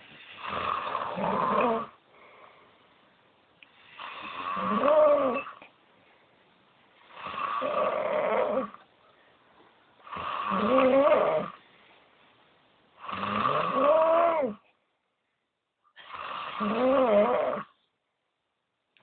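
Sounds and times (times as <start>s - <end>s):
person snoring with buzzing pitch: 0.3s - 2.0s, 3.9s - 5.6s, 7.1s - 8.8s, 10.0s - 11.6s, 13.0s - 14.6s, 16.0s - 17.7s.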